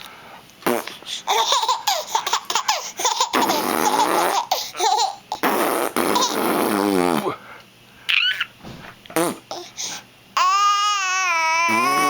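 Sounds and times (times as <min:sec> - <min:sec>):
baby laughing: 0:01.3 - 0:06.6, 0:08.1 - 0:08.5.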